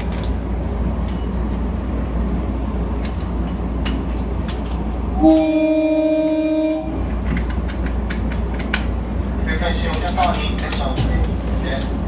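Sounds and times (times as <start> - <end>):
train car rumble: 0.0 - 12.0
train horn: 5.2 - 7.1.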